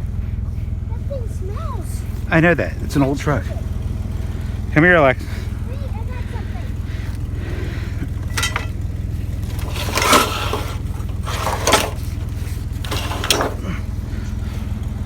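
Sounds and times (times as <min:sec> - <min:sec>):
truck engine idling: 0:00.0 - 0:15.0
scrap metal clanking and scraping: 0:07.7 - 0:14.1.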